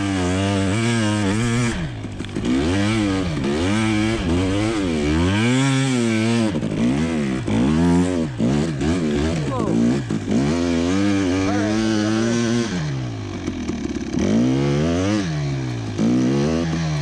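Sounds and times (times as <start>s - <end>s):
dirt bike engine revving: 0.0s - 17.0s.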